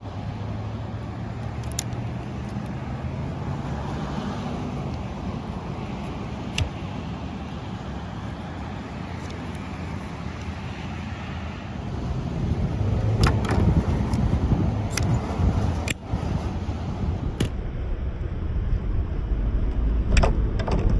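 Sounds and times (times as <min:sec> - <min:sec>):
low rumble of road traffic: 0:00.0 - 0:20.9.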